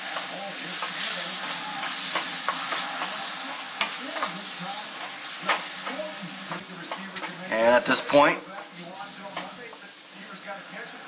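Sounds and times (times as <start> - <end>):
utensil clicking against pan: 0.0 - 7.4, 8.5 - 9.8
chicken sizzling in a pan: 0.0 - 11.0.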